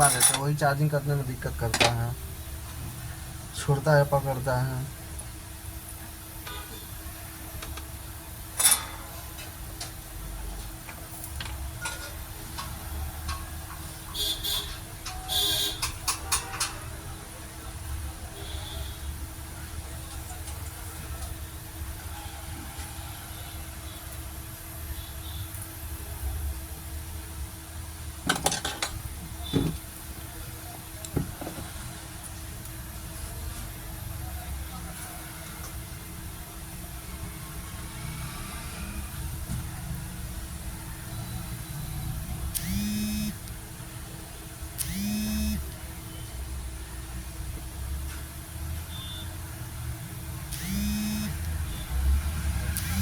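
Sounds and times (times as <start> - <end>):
metal tools clicking and tapping: 0.0 - 0.6, 1.7 - 2.0, 8.6 - 10.0, 10.9 - 13.9, 15.0 - 16.8, 28.3 - 29.8
soldering tools clicking on circuit board: 44.8 - 45.8, 52.8 - 53.0.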